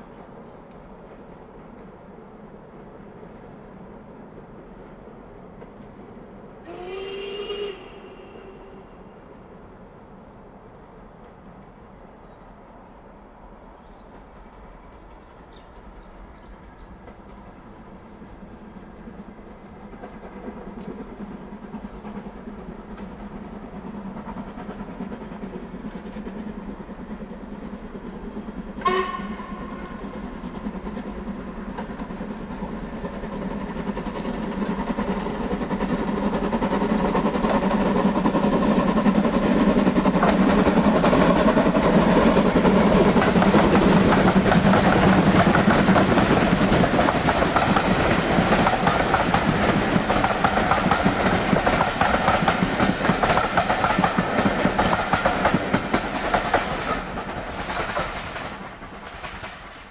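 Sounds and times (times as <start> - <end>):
steam train running: 0.0 - 59.9
train whistle toot: 6.6 - 9.2, 28.8 - 30.2.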